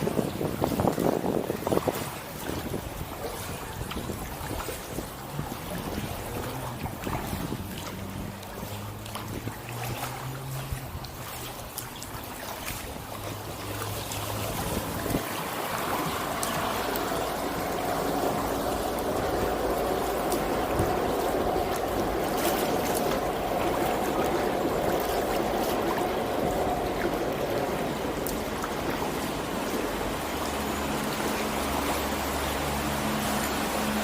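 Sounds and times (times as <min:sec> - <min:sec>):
water trickling around kayak: 0:00.0 - 0:34.0
low hum: 0:13.0 - 0:34.0.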